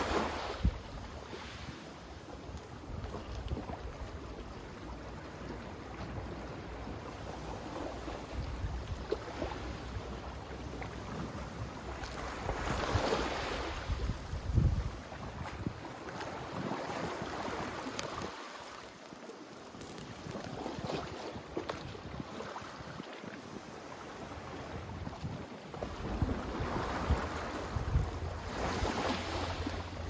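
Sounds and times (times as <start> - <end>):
sea waves washing: 12.1 - 22.6
wind buffeting microphone: 12.5 - 18.4, 24.9 - 30.0.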